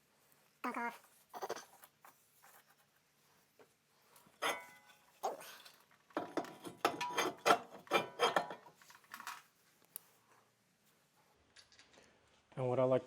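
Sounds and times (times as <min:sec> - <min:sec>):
hand tool scraping metal: 0:04.4 - 0:05.0, 0:06.2 - 0:08.7.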